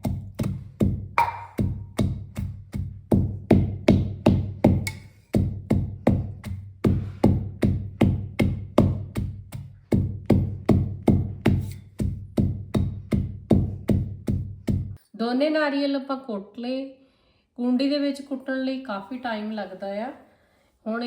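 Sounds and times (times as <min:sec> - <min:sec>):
pestle pounding in mortar: 0:00.0 - 0:15.0.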